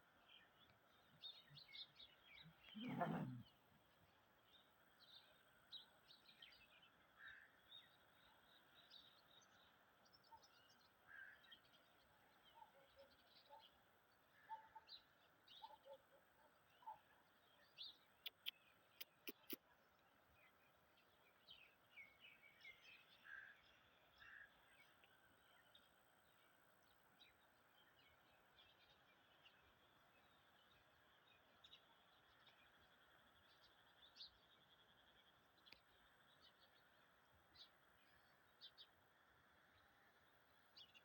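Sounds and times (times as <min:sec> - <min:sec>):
faint bird chirps: 0:00.1 - 0:26.6.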